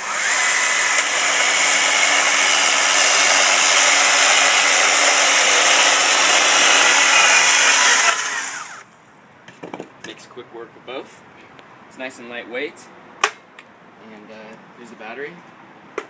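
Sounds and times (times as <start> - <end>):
electric chainsaw cutting wood: 0.0 - 8.9.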